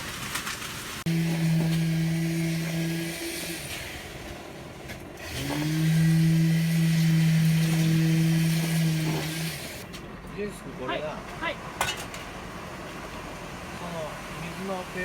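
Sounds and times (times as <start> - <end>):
motor humming and spinning up: 1.1 - 9.9.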